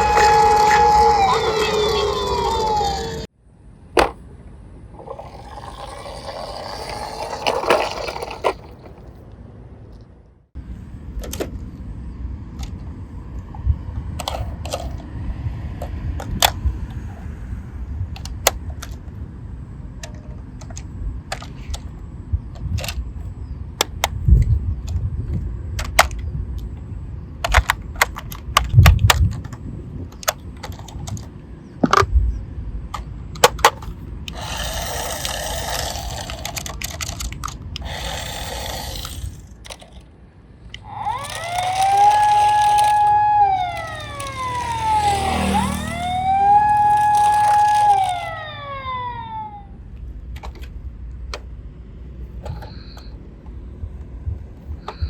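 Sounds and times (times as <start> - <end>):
toy vehicles rolling: 0.0 - 3.3, 5.0 - 9.2, 14.2 - 15.1, 27.4 - 31.3, 32.9 - 40.1, 40.7 - 49.6
plastic clicks and clacks: 22.5 - 23.0, 23.8 - 26.8, 27.4 - 32.2, 32.9 - 40.1.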